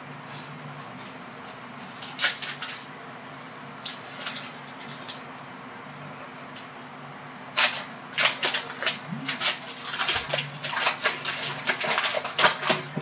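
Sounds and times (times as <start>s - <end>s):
card wrapper crackling: 7.6s - 13.0s.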